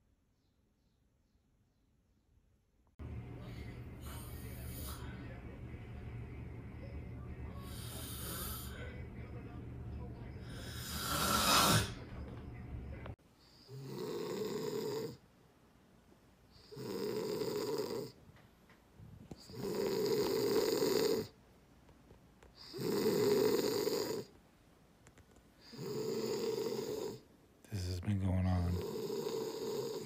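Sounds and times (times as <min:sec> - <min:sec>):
quiet breaths: 0:03.0 - 0:15.2
person snoring: 0:07.6 - 0:09.0, 0:10.4 - 0:12.0, 0:13.5 - 0:15.2, 0:16.6 - 0:18.2, 0:19.4 - 0:21.4, 0:22.6 - 0:24.3, 0:25.6 - 0:27.2, 0:28.5 - 0:30.0.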